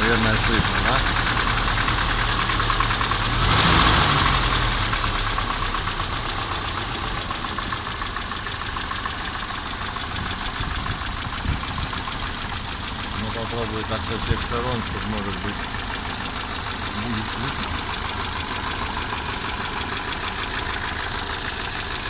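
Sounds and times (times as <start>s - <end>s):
car engine revving and idling: 0.0s - 22.0s
engine ticking knock: 0.0s - 22.0s.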